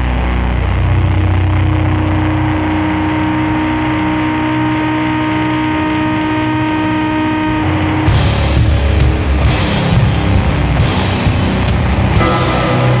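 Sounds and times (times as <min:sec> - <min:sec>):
distorted guitar droning: 0:00.0 - 0:13.0
drums and cymbals crashing: 0:08.1 - 0:13.0.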